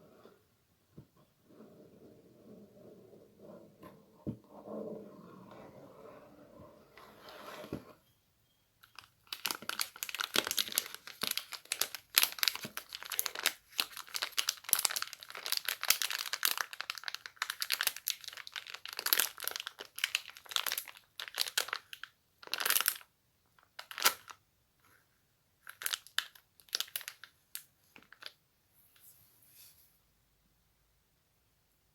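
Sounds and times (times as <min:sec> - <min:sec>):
crinkly material rustling: 0:08.9 - 0:23.0.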